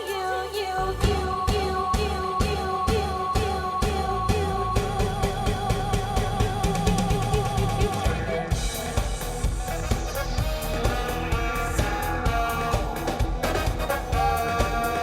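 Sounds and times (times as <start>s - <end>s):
instrumental pop band music: 0.0s - 15.0s.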